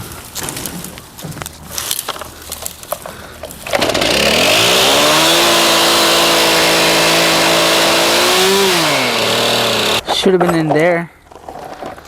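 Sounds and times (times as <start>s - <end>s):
chainsaw engine revving: 3.7s - 10.0s.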